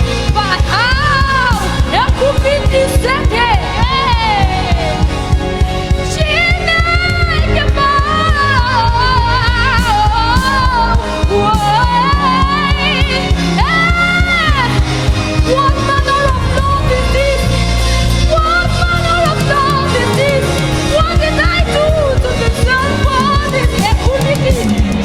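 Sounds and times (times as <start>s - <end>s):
keyboard and bass: 0.0s - 25.0s
person singing with vibrato: 0.0s - 25.0s.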